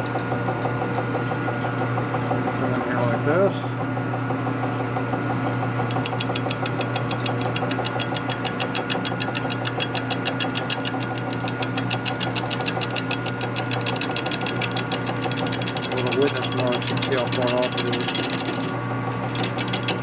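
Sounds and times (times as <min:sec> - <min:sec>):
metal lathe humming: 0:05.2 - 0:20.0
cutting tool ticking rapidly: 0:05.9 - 0:20.0.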